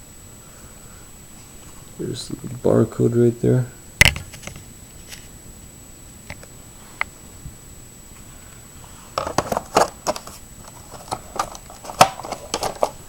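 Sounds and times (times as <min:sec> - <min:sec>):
plastic parts clattering: 0:09.2 - 0:13.0.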